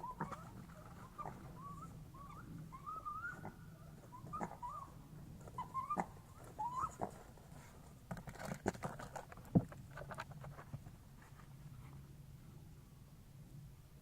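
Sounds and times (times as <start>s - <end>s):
animal whining calls: 0.0s - 7.2s.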